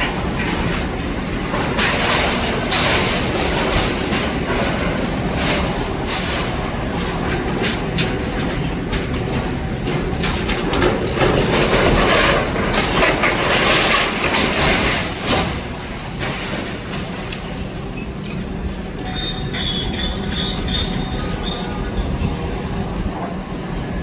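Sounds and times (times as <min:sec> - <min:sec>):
rubble crunching and clattering: 0:10.2 - 0:17.7.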